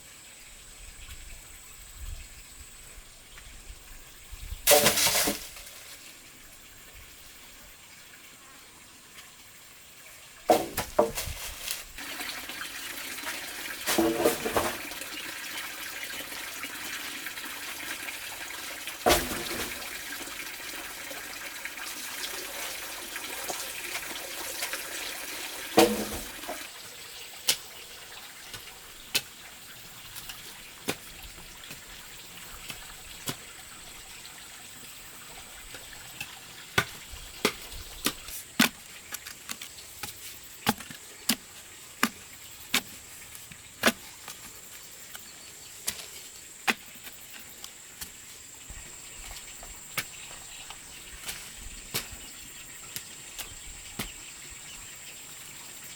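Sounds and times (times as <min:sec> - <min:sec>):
water running: 0:10.4 - 0:46.7.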